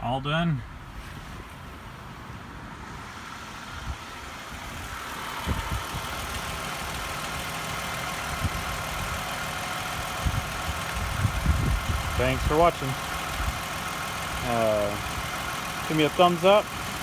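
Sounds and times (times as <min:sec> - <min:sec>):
car engine idling: 0:00.0 - 0:17.0.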